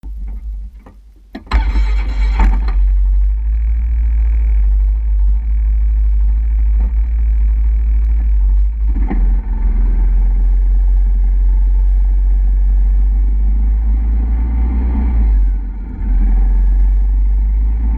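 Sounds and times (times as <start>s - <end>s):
quad bike engine rumbling: 0.0s - 17.9s.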